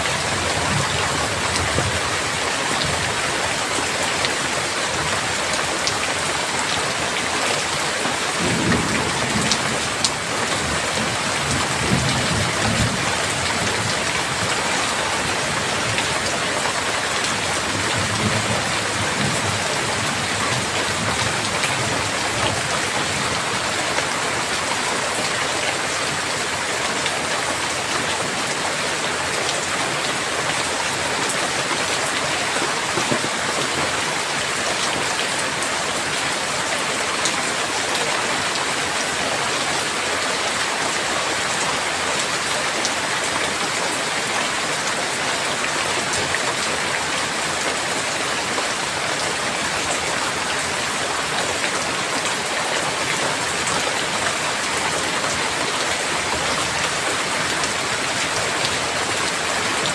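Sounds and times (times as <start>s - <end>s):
heavy rain hissing: 0.2s - 59.9s
low thunder rumbling: 8.4s - 13.3s.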